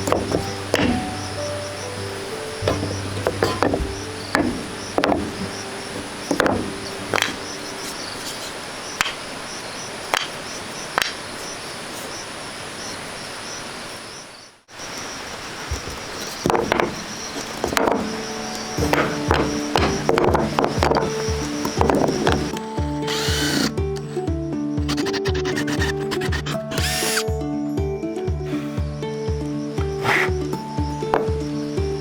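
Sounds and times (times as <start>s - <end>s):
wood being struck: 0.0s - 8.2s, 15.7s - 24.2s, 24.8s - 27.5s, 29.3s - 32.0s
insect chorus: 0.0s - 27.4s, 28.4s - 32.0s.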